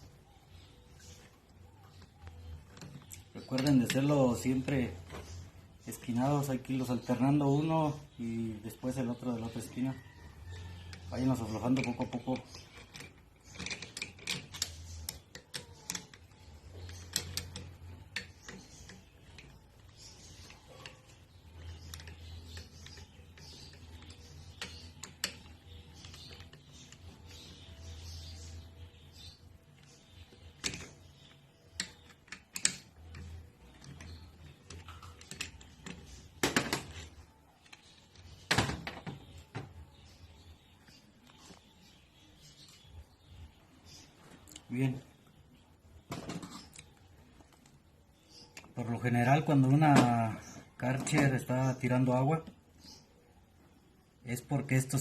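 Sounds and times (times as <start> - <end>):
allen key clicking on metal screws: 10.9 - 27.6, 29.2 - 38.4.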